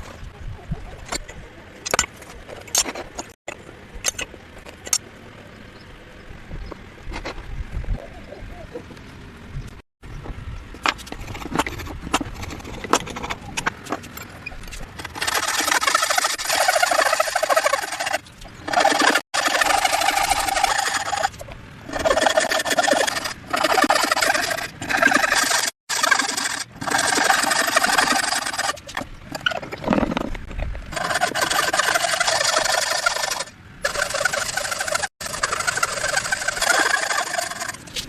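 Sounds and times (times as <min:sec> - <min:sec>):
tool scraping wood: 0:10.8 - 0:38.0.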